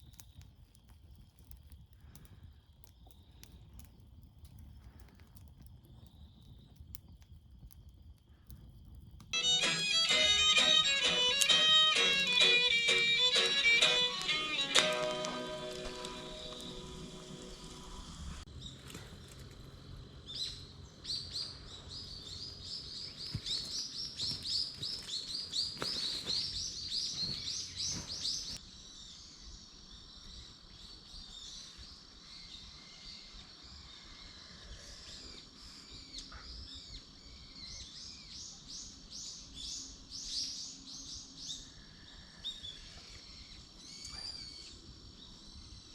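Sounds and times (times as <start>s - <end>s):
faint outdoor background hiss: 9.3s - 45.9s.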